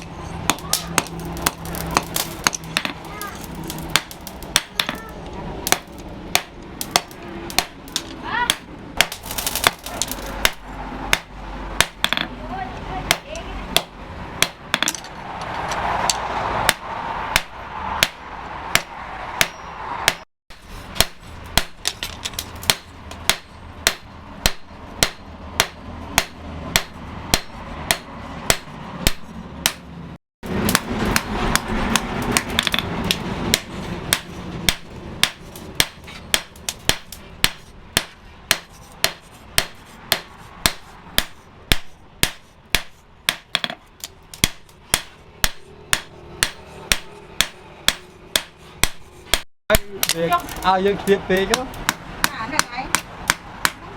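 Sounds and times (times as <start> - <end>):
hammer striking steel on anvil: 16.0 - 29.9, 30.5 - 50.6.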